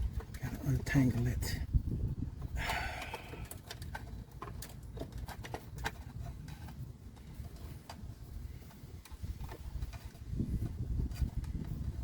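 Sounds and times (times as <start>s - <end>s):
wiring harness clicking and tapping: 2.6s - 8.1s.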